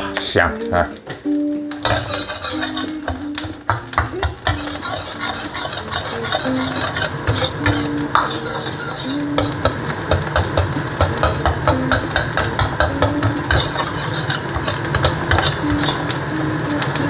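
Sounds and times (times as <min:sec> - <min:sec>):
egg yolks sizzling in oil: 0:00.0 - 0:17.0
metal spatula scraping a wok: 0:01.7 - 0:03.6, 0:04.4 - 0:16.3.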